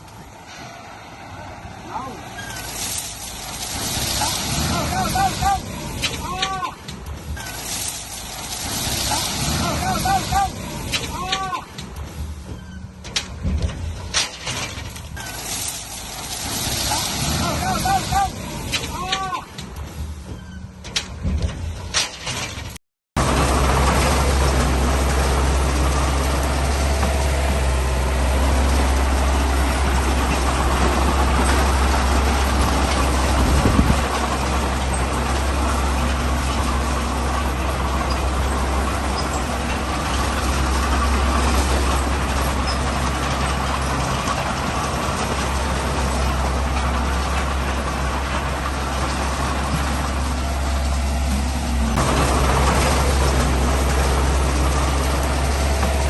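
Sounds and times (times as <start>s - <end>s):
heavy diesel engine rumbling: 0.0s - 56.0s.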